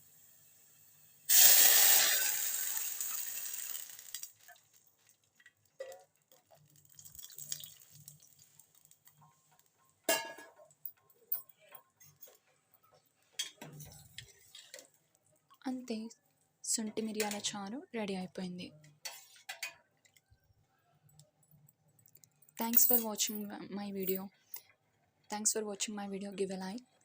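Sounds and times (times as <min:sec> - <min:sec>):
oil sizzling loudly: 0:00.0 - 0:05.4, 0:06.4 - 0:09.1.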